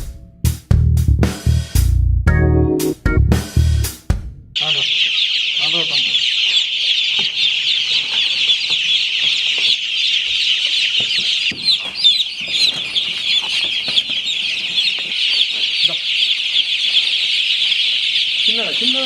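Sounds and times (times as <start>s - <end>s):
chickens peeping: 4.6s - 19.0s.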